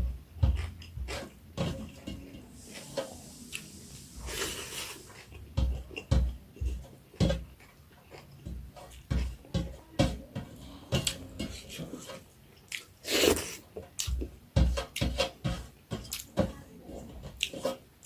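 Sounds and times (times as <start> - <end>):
chewing and wet mouth sounds: 0.5 - 9.1, 10.6 - 14.4, 16.0 - 16.4, 17.3 - 17.7
slurps: 2.5 - 5.4, 10.6 - 13.6.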